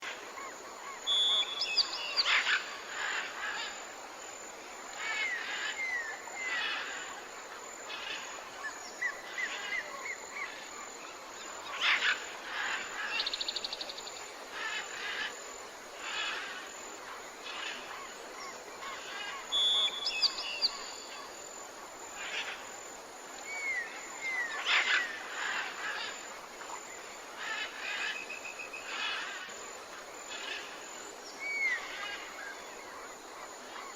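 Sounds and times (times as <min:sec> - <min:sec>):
steady outdoor hiss: 0:00.0 - 0:33.9
birds singing and chirping: 0:01.0 - 0:02.7.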